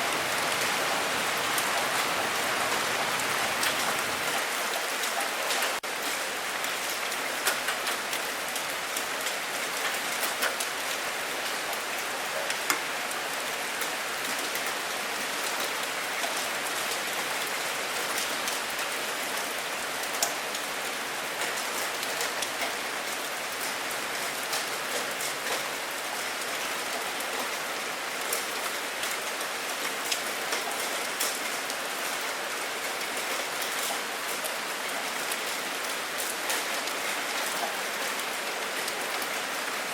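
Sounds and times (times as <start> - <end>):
steady rain falling: 0.0 - 39.9.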